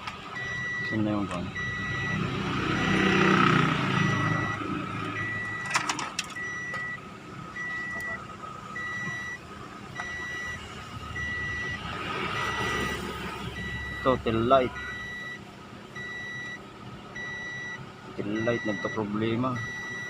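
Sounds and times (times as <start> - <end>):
electronic warning beep: 0.4 - 3.2, 3.9 - 5.8, 6.4 - 7.0, 7.6 - 8.2, 8.8 - 9.4, 10.0 - 10.6, 11.2 - 13.0, 13.6 - 15.4, 16.0 - 16.6, 17.2 - 20.0.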